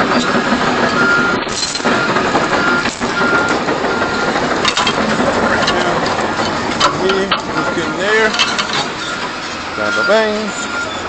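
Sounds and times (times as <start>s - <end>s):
heavy equipment running: 0.0s - 11.0s
backup alarm beeping: 1.0s - 4.7s, 6.9s - 11.0s.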